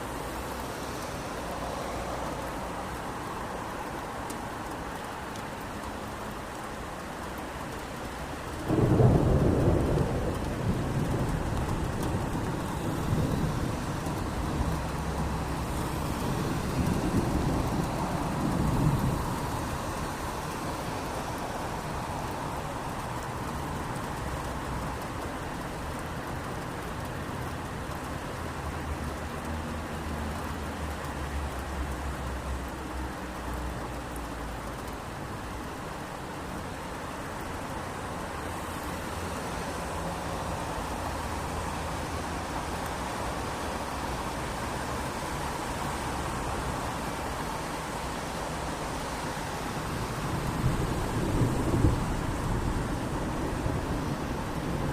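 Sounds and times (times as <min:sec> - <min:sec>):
steady rain: 0:00.0 - 0:54.9
thunder clap and rumble: 0:08.6 - 0:26.1, 0:49.9 - 0:54.9.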